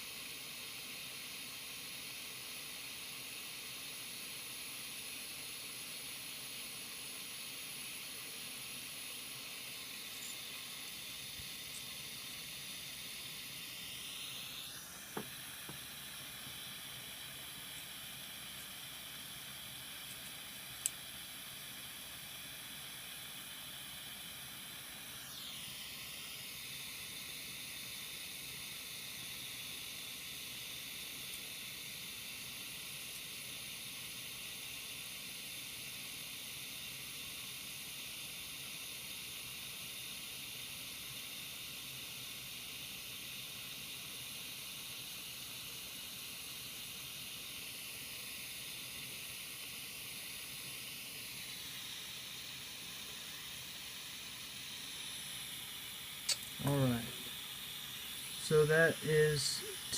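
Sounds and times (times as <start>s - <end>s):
soldering iron gas hiss: 0.0s - 59.9s.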